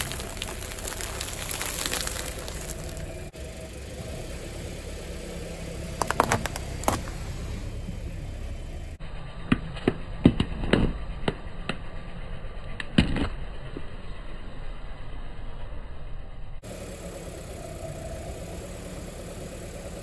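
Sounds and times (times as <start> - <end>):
tire crushing brittle objects: 0.0 - 3.3, 6.0 - 7.3, 12.7 - 14.1
car engine idling: 0.0 - 20.0.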